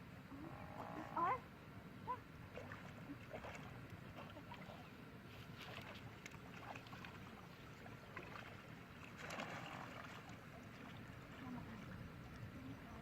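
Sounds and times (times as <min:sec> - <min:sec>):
water sloshing and trickling: 0:02.4 - 0:13.0
water splash: 0:08.2 - 0:11.9.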